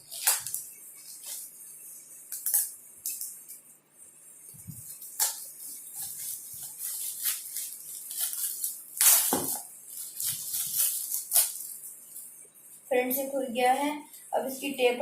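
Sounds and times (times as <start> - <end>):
gift packaging crinkling: 0.0 - 1.6, 4.7 - 12.3.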